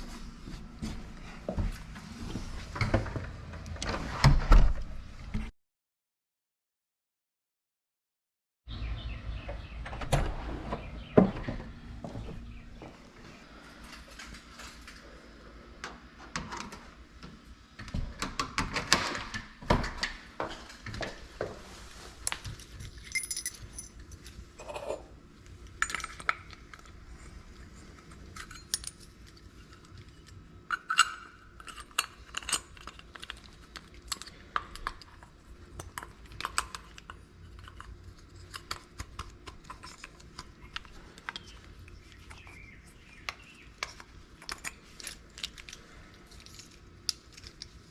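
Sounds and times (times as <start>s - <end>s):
keys and lock parts jingling: 22.6s - 24.3s, 28.3s - 29.9s.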